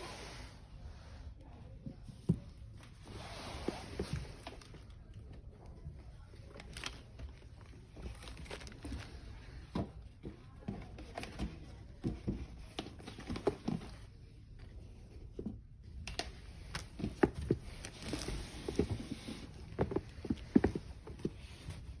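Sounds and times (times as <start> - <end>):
cardboard box rustling: 16.6 - 22.0.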